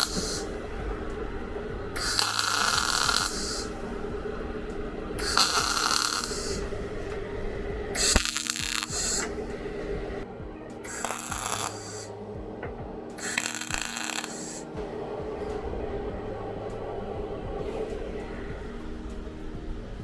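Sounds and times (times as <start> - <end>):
shop tool hissing bursts: 0.0 - 1.1, 2.0 - 4.2, 5.2 - 10.2, 10.8 - 12.1, 13.2 - 14.8
low machine hum: 0.0 - 20.0.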